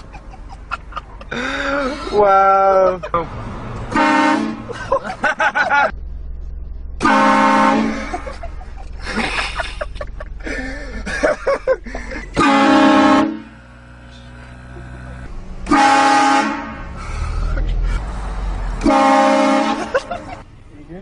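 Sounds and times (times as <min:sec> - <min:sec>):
voices: 0:01.3 - 0:03.3
train horn blasts: 0:03.9 - 0:04.7, 0:07.0 - 0:08.2, 0:12.3 - 0:14.7, 0:15.7 - 0:17.0, 0:18.8 - 0:19.9.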